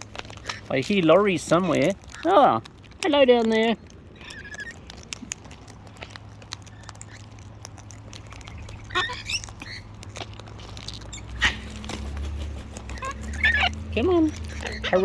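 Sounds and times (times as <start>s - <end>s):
beaks and claws clicking: 0.0s - 15.0s.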